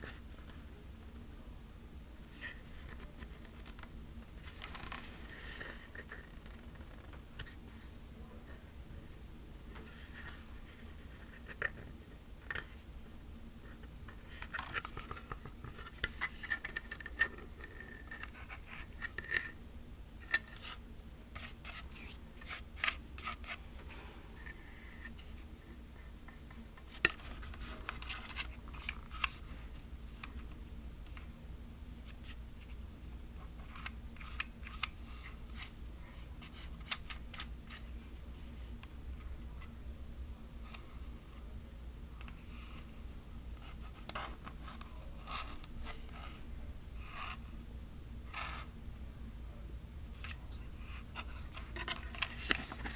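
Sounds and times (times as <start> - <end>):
scratchy rubs on plastic: 43.6 - 46.4, 48.3 - 48.7.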